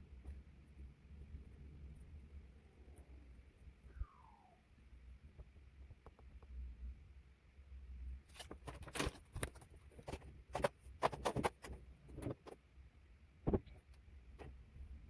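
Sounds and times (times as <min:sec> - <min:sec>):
sharp clicks and knocks: 0:08.4 - 0:12.6.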